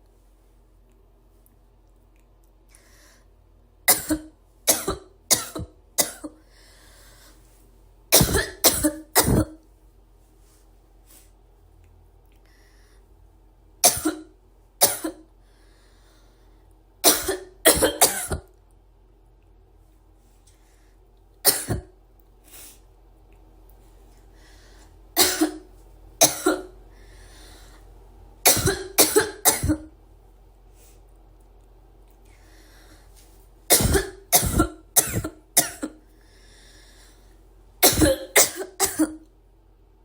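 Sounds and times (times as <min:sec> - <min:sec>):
girl coughing: 0:03.9 - 0:06.4, 0:08.2 - 0:09.6, 0:13.8 - 0:15.3, 0:17.0 - 0:18.5, 0:21.5 - 0:21.9, 0:25.2 - 0:26.7, 0:28.5 - 0:29.9, 0:33.7 - 0:36.0, 0:37.8 - 0:39.2.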